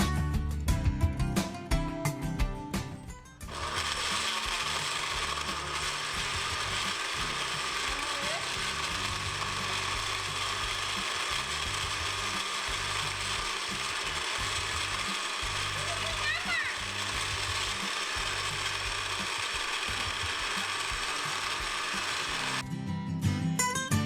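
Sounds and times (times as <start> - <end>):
blender running: 3.5 - 22.6.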